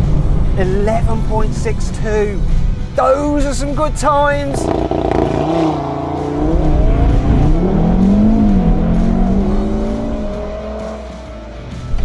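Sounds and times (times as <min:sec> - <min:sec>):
car engine accelerating: 0:04.4 - 0:12.0.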